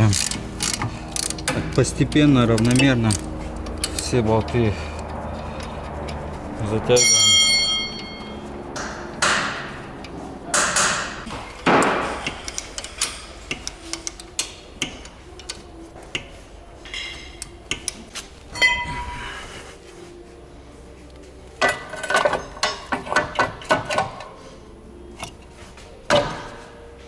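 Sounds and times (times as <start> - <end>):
ratchet wrench ratcheting: 0.0 - 5.7
ringing metallic clink: 7.0 - 8.4, 18.6 - 19.1.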